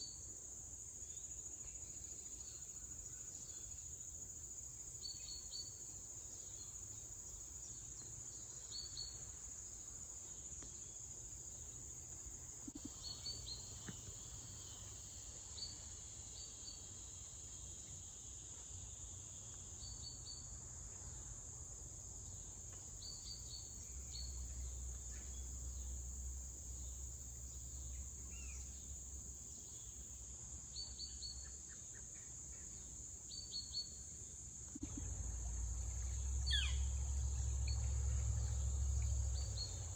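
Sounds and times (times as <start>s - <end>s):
crickets chirping: 0.0s - 39.9s
bird chirps: 35.8s - 39.9s.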